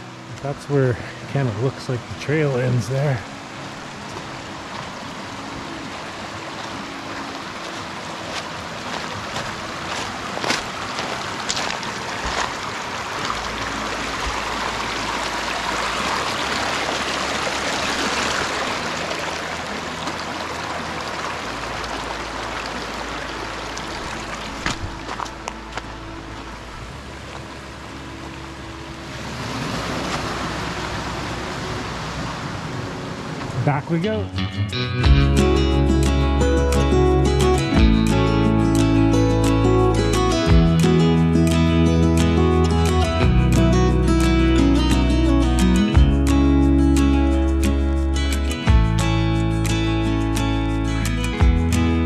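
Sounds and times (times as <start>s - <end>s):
creek water running: 0.0s - 34.4s.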